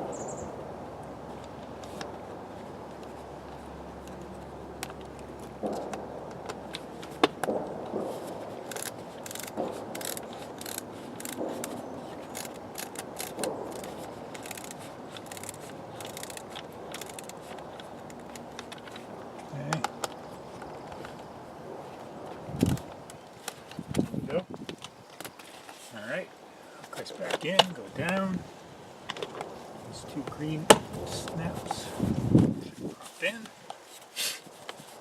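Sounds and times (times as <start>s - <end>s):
ratcheting screwdriver clicking: 8.7s - 18.8s.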